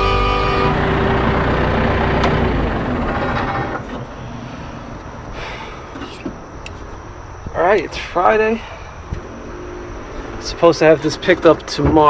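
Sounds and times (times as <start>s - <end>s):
heavy engine rumbling: 0.0s - 6.8s
outdoor noise: 0.0s - 12.0s.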